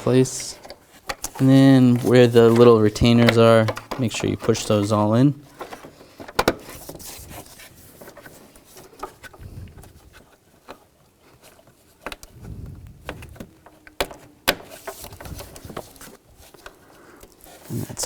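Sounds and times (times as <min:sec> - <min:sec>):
faint handling and rubbing: 0:00.0 - 0:18.0
plastic retainers clicking into place: 0:00.6 - 0:04.8.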